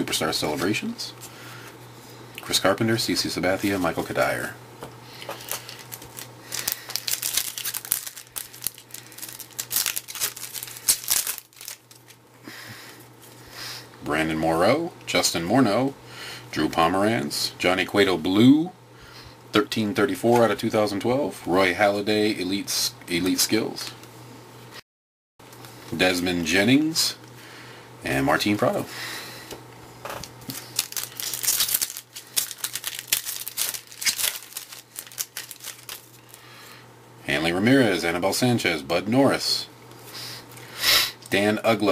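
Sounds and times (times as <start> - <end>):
foil wrapper crinkling: 5.1 - 12.2, 30.2 - 36.5.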